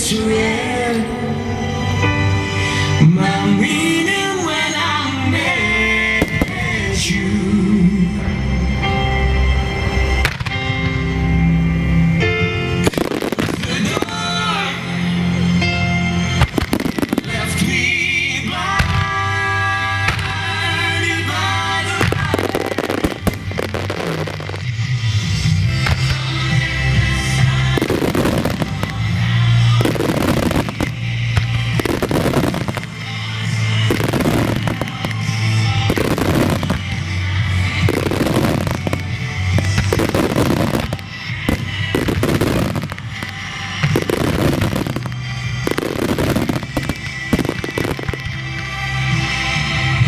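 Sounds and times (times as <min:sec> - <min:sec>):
loud music: 0:00.0 - 0:50.0
fireworks bursting and crackling: 0:06.0 - 0:07.2, 0:10.2 - 0:11.1, 0:12.7 - 0:49.8.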